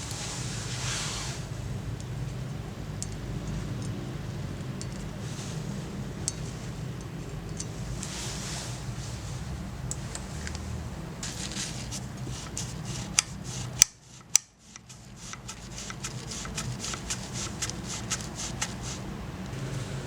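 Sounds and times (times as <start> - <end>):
steady low hum: 0.0 - 20.0
pruning shears clicking: 11.2 - 19.1.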